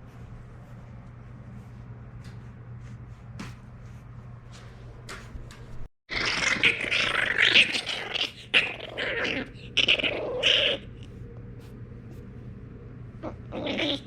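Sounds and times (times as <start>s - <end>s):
puppy growling: 6.1s - 11.2s, 13.2s - 14.0s.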